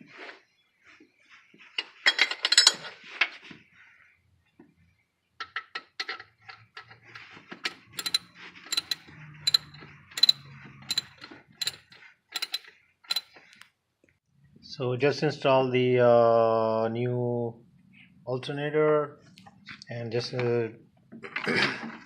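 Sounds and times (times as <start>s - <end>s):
metal clatter: 5.4s - 13.4s
ratchet wrench clicking: 7.7s - 13.3s.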